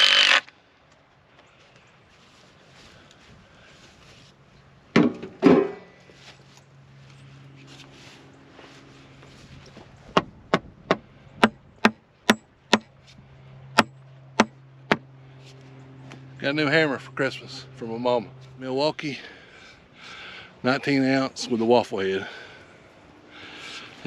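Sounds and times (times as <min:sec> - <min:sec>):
low steady hum: 0:00.0 - 0:24.0
hammer blows on wood: 0:10.2 - 0:12.9, 0:13.7 - 0:15.0.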